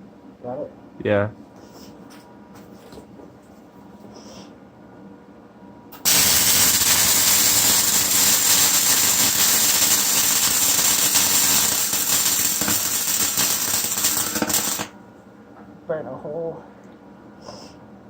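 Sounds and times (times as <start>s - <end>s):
arc welding hiss: 6.0s - 14.9s.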